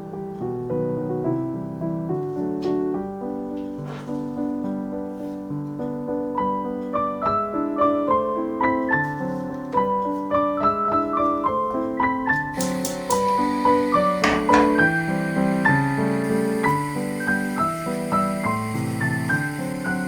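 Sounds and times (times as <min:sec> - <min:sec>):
piano music: 0:00.0 - 0:20.0
hiss of noise: 0:12.6 - 0:20.0.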